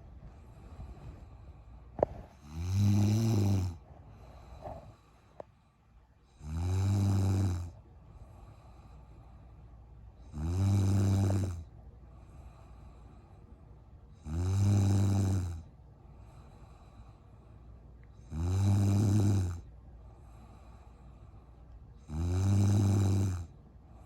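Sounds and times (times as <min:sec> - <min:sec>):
quiet breathing: 0:00.0 - 0:24.0
woman snoring: 0:02.0 - 0:03.8, 0:06.4 - 0:07.8, 0:10.2 - 0:11.7, 0:14.2 - 0:15.7, 0:18.2 - 0:19.7, 0:22.0 - 0:23.6.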